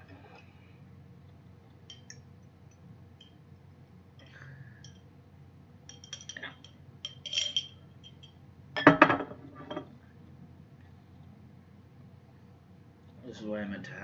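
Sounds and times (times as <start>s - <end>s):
utensils clinking on tableware: 1.9s - 2.2s, 5.9s - 9.9s.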